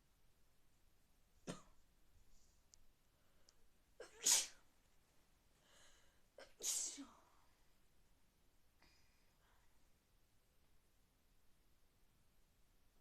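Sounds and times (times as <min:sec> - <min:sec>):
person sneezing: 0:01.4 - 0:01.8, 0:04.0 - 0:04.6, 0:06.4 - 0:07.3.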